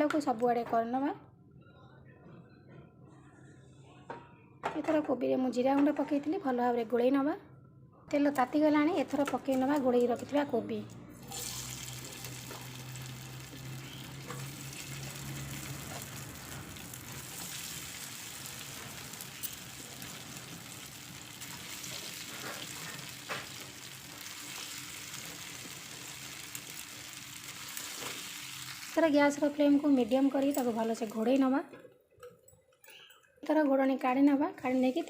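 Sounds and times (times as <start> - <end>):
frying in hot oil: 11.2 - 31.6, 34.6 - 35.0
oil crackling and spattering: 11.3 - 29.0.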